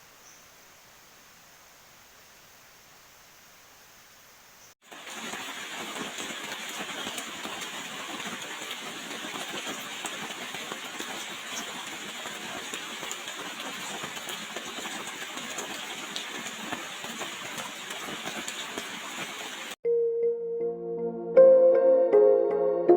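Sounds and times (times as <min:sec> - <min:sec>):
heavy rain: 0:04.8 - 0:19.8.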